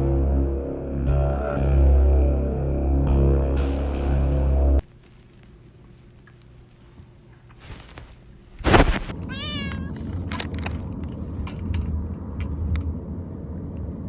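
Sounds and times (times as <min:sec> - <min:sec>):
steady low rumble: 0:07.9 - 0:14.0
cat meowing: 0:09.2 - 0:10.1.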